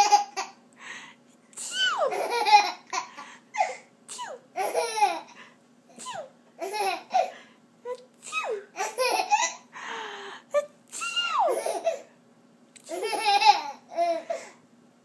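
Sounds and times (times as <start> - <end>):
baby laughing: 0.0 - 0.6, 1.7 - 5.4, 6.0 - 7.4, 8.4 - 9.7, 10.6 - 12.1, 12.8 - 14.4.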